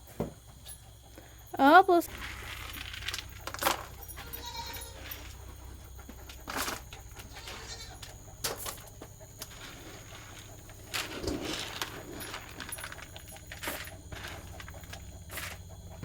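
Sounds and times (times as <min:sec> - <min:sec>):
goats knocking and rustling: 0:02.1 - 0:16.0
goat bleating: 0:04.2 - 0:05.0, 0:07.2 - 0:08.0.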